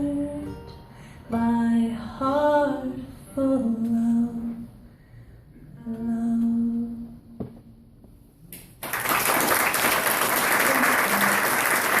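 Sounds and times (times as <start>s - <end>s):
audience applause: 8.8s - 12.0s.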